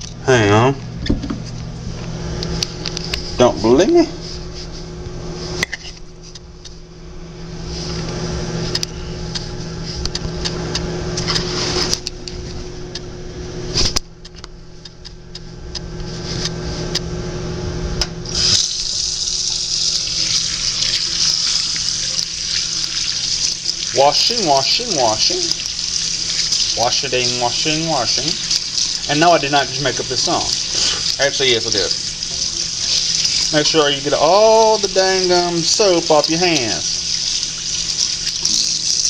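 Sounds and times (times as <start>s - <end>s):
steady low hum: 0.0s - 39.0s
tap running with hands washing: 18.3s - 39.0s.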